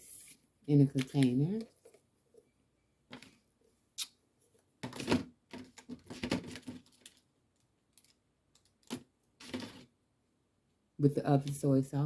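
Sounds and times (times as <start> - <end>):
container and packaging handled: 0.2 - 2.1, 4.6 - 10.0.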